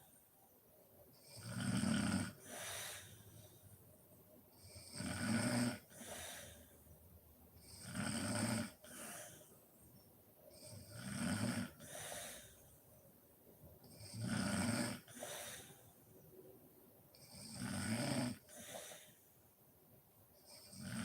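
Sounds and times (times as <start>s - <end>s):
woman snoring: 1.2s - 3.1s, 4.6s - 6.6s, 7.6s - 9.4s, 10.6s - 12.6s, 13.9s - 15.7s, 17.2s - 19.1s, 20.5s - 21.0s
soft breath out: 2.4s - 3.8s, 11.8s - 12.8s, 15.1s - 16.0s.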